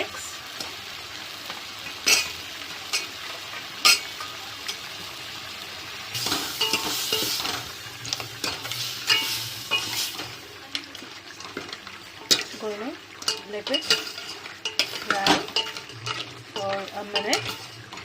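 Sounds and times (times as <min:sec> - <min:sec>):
crab legs sizzling in a pan: 0:00.0 - 0:18.0.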